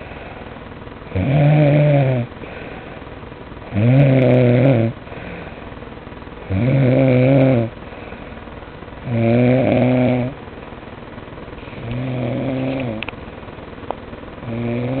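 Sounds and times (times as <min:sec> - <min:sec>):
person snoring: 0:01.1 - 0:02.9, 0:03.7 - 0:05.6, 0:06.4 - 0:08.2, 0:09.0 - 0:10.4, 0:11.6 - 0:13.0, 0:14.4 - 0:15.0.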